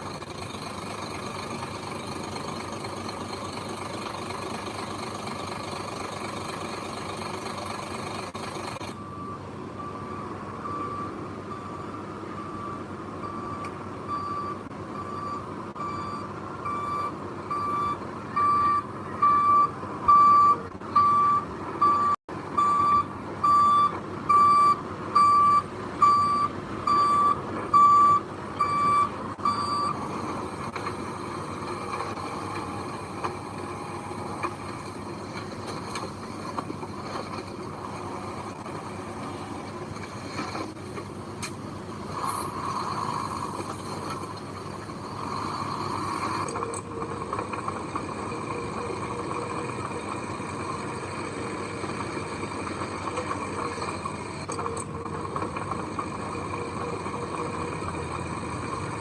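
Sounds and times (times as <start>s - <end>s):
diesel engine running: 0.0s - 59.0s
back-up alarm beeping: 8.8s - 30.0s.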